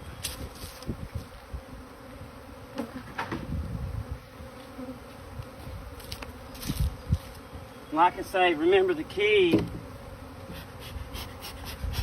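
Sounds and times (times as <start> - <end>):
bees buzzing: 0.0 - 12.0
knocks on hive box: 9.5 - 9.9.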